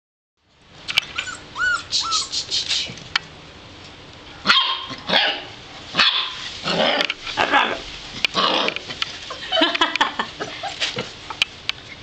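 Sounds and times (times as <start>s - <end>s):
puppies whining: 1.0s - 2.5s
puppies yapping: 1.0s - 2.5s
puppy barks: 4.4s - 7.8s.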